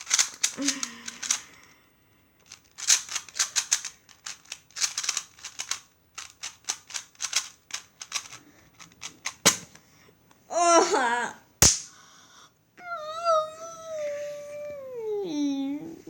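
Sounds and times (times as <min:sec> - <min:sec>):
plastic puzzle cube clacking: 0:00.0 - 0:01.6, 0:02.4 - 0:09.8.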